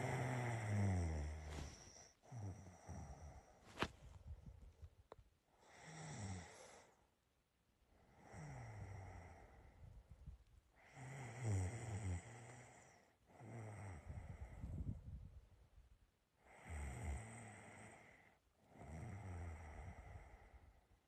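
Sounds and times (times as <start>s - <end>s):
person snoring: 0.0s - 3.4s, 10.9s - 14.4s, 16.5s - 18.2s.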